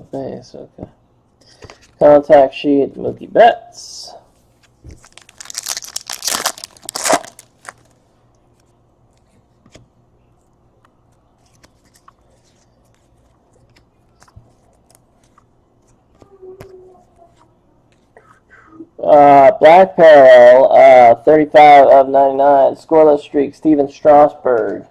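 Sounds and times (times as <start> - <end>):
cards being handled: 4.6 - 9.9, 10.8 - 16.3
wrapper tearing and crinkling: 5.0 - 8.0.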